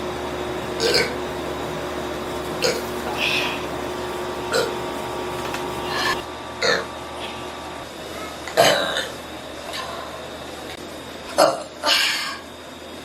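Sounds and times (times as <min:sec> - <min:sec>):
woman burping: 0:08.6 - 0:09.2.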